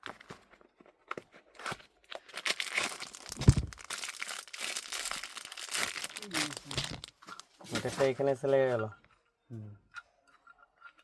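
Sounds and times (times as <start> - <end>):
packaging crinkling and rustling: 0.0 - 8.2.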